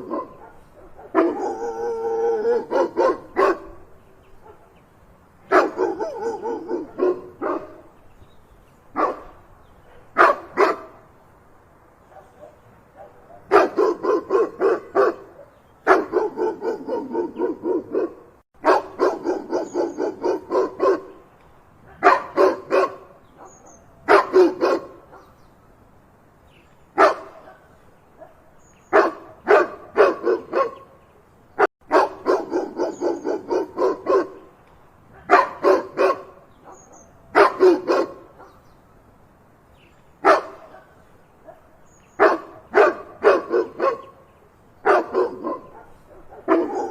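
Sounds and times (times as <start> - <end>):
dog barking: 0.0 - 3.8, 4.4 - 4.8, 5.5 - 7.9, 9.0 - 11.0, 12.1 - 21.2, 21.9 - 25.3, 27.0 - 30.9, 31.9 - 34.5, 35.1 - 38.6, 40.2 - 44.2, 44.8 - 46.9.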